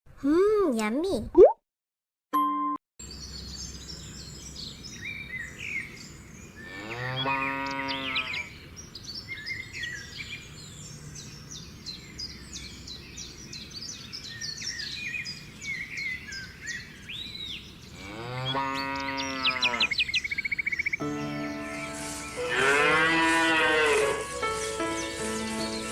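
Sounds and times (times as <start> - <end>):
small birds chirping: 3.0 - 25.9
low animal calls: 22.5 - 24.3.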